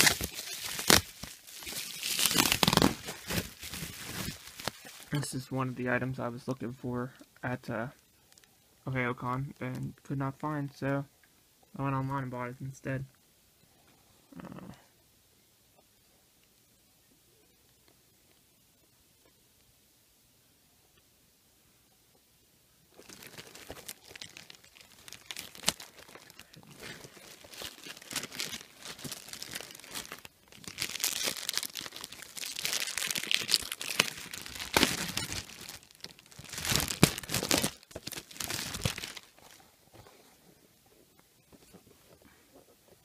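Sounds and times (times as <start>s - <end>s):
packing material crinkling and tearing: 0.0s - 5.4s, 22.9s - 39.6s.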